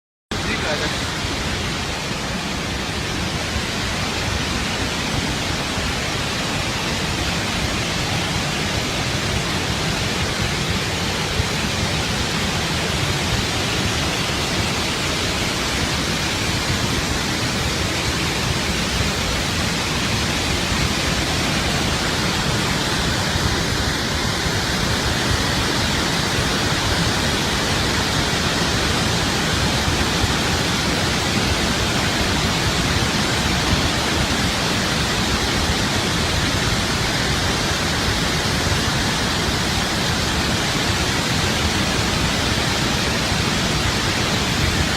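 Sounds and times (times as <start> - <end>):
water rushing through spillway: 0.3 - 44.9.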